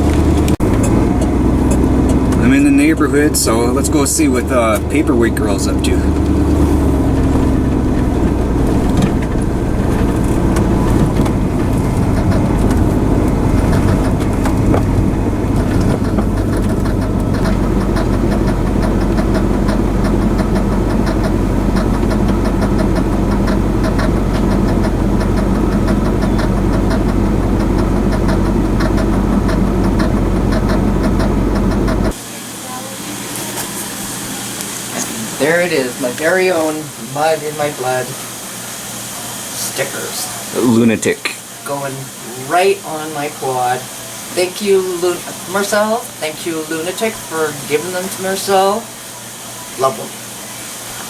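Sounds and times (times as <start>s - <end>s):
road noise: 0.0s - 32.2s
vehicle engine: 0.0s - 32.2s.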